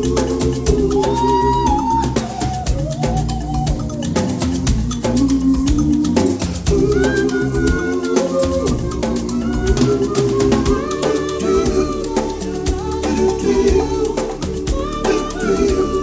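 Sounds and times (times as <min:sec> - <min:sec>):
background music with quick beat: 0:00.0 - 0:16.0.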